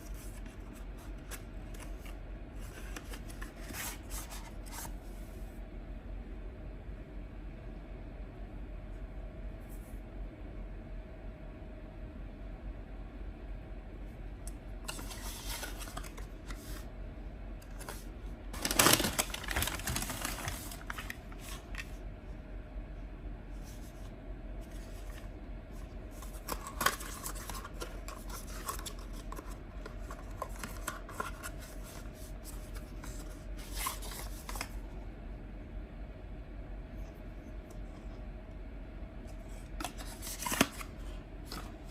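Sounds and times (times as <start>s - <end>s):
packaging rustling and tearing: 14.9s - 16.8s, 17.7s - 21.9s, 26.2s - 34.8s, 39.8s - 41.7s.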